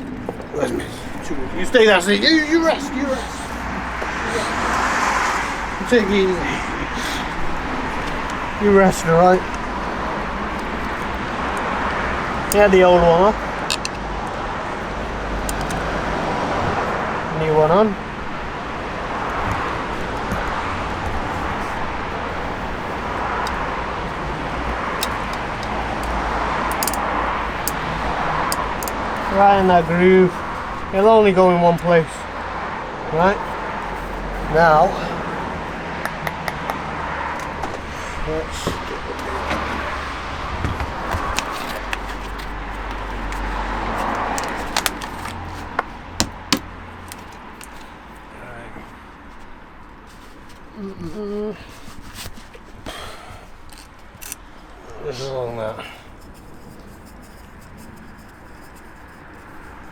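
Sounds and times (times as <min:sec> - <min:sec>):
cars passing: 0:00.0 - 0:59.9
road traffic hum: 0:00.0 - 0:59.9
plastic parts clicking: 0:13.6 - 0:14.4, 0:15.4 - 0:16.1, 0:23.3 - 0:29.4, 0:38.7 - 0:47.9, 0:53.6 - 0:54.5.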